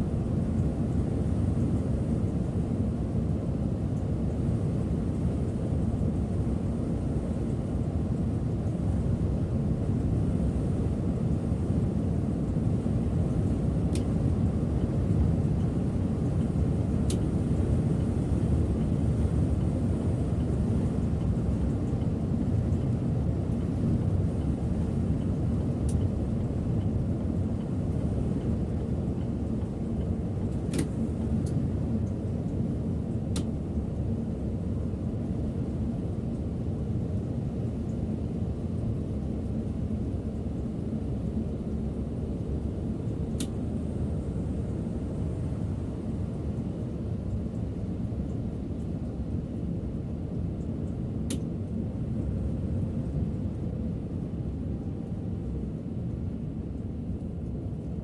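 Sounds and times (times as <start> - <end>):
bus engine and road rumble: 9.9 - 34.5.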